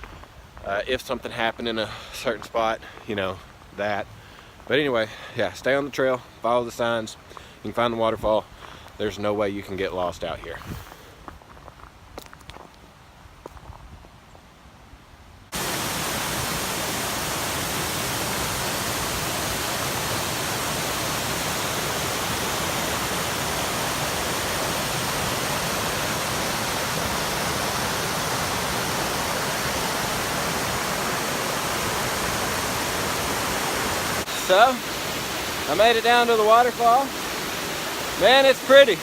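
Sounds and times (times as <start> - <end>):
waterfall rushing: 15.5 - 39.0.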